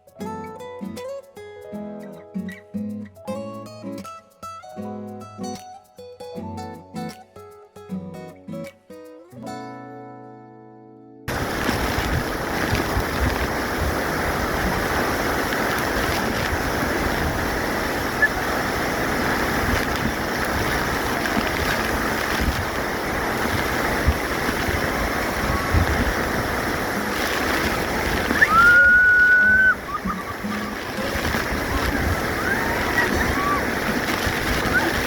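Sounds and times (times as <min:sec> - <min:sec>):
waterfall roaring: 0:11.3 - 0:35.0
high whistling tone: 0:28.3 - 0:31.2, 0:32.4 - 0:33.6.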